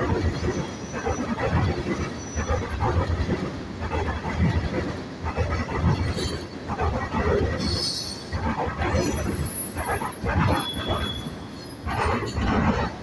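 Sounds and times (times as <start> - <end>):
faint wheel squeal: 10.4 - 12.4.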